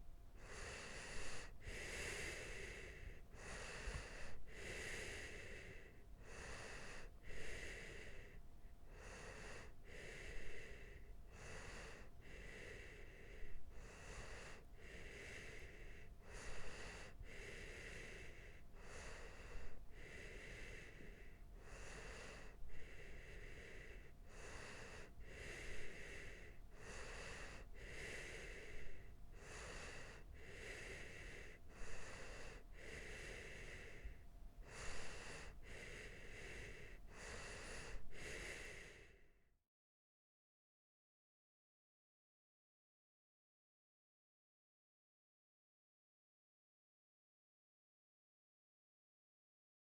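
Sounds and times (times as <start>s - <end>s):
person breathing while asleep: 0.0s - 39.4s.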